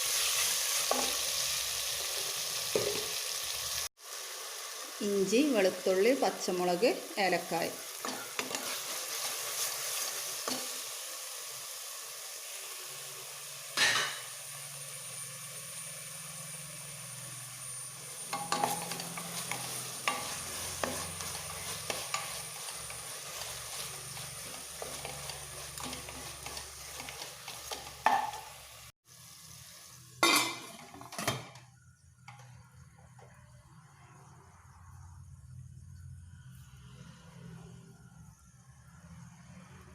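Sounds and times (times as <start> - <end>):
spoon stirring and scraping pan: 0.0 - 3.3, 7.3 - 11.0, 18.0 - 28.9
food sizzling in oil: 0.0 - 31.8
spoon knocking on pan: 27.0 - 28.5.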